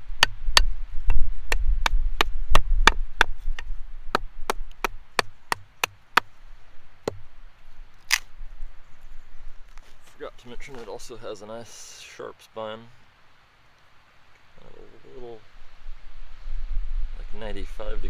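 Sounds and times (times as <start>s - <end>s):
knife chopping into a branch: 1.5s - 6.4s, 7.1s - 7.3s, 8.0s - 8.3s.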